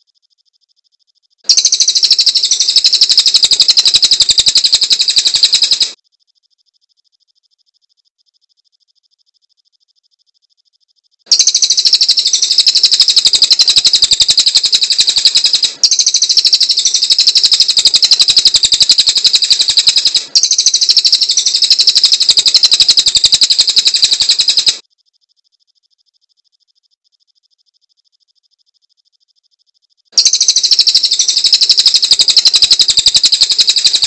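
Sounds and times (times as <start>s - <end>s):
bird singing shrill trill: 1.5s - 6.0s, 11.3s - 24.8s, 30.2s - 34.0s.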